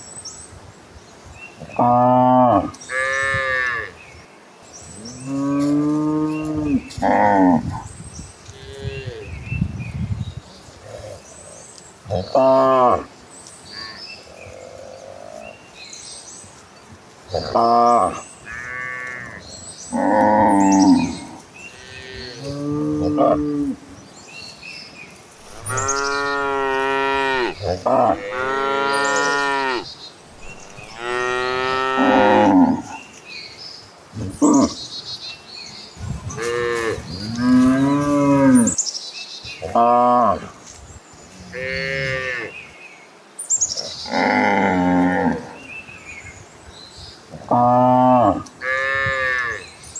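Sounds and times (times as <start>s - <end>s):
cattle mooing: 25.4s - 33.0s.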